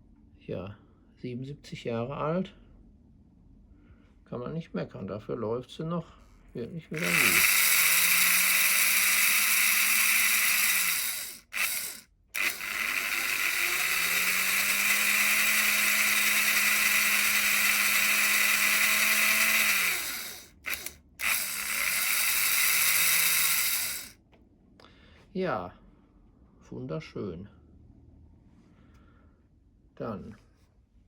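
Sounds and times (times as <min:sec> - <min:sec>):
model locomotive motor whirring: 0:07.0 - 0:24.2.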